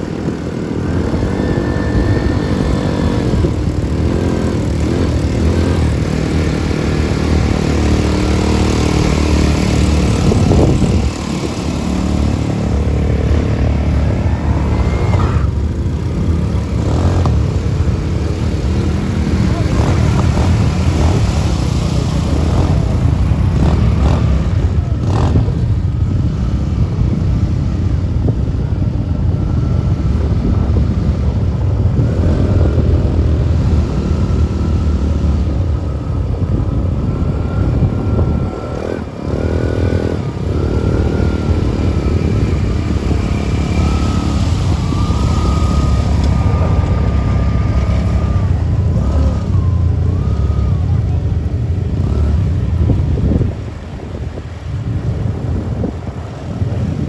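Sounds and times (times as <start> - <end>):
vehicle engine rumbling: 0.0 - 57.0
thin wavering whine: 32.6 - 51.8.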